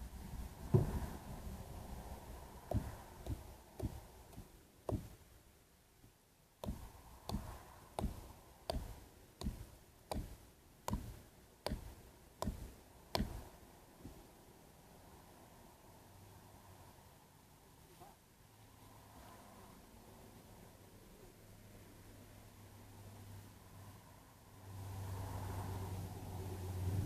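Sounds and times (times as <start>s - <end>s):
sharp knocks: 0.7s - 1.1s, 2.7s - 5.2s, 6.6s - 14.2s.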